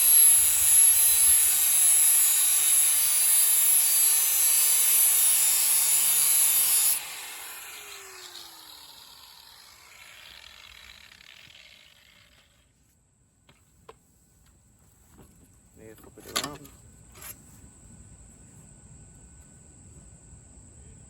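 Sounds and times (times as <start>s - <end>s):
electric sander grinding metal blade: 0.0s - 12.7s
motor whining down: 7.0s - 12.6s.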